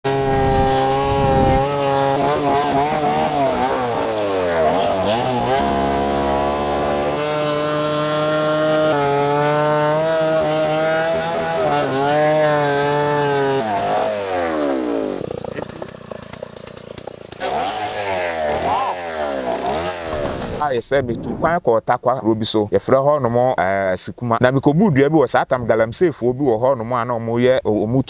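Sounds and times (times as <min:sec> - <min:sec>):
chainsaw engine revving: 0:00.1 - 0:21.3.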